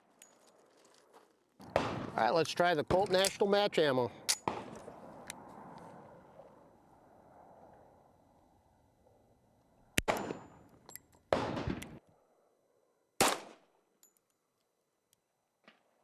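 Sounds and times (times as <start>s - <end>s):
pistol shots with ringing tail: 1.6s - 2.2s, 4.2s - 4.8s, 10.0s - 10.6s, 11.3s - 11.9s, 13.2s - 13.7s.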